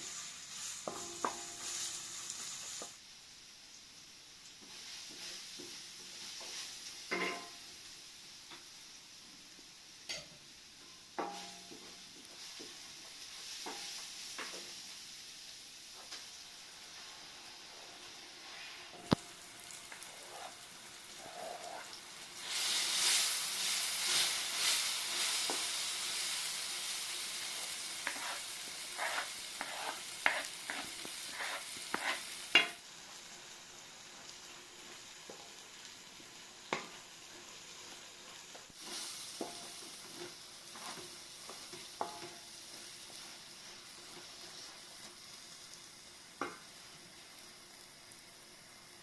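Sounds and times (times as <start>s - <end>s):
food sizzling in hot oil: 0.0s - 49.0s
spoon tapping and scraping pan: 0.8s - 1.6s, 6.4s - 7.6s, 10.1s - 10.4s, 11.2s - 12.8s, 13.6s - 14.7s, 28.0s - 32.8s, 38.8s - 43.2s.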